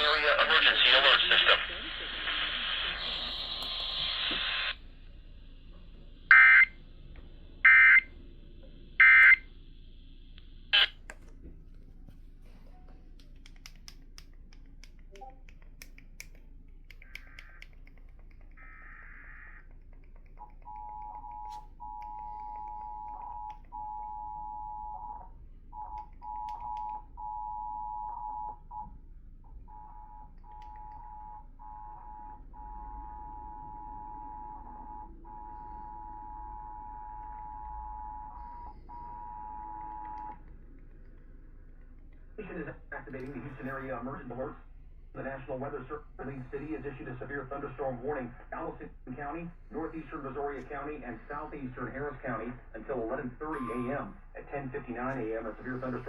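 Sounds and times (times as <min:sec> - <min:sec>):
radio hiss: 0:00.0 - 0:06.8, 0:08.8 - 0:11.0, 0:42.3 - 0:56.0
faint static: 0:00.0 - 0:56.0
two-tone attention signal: 0:53.6 - 0:54.1
data tone bursts: 0:53.6 - 0:54.2.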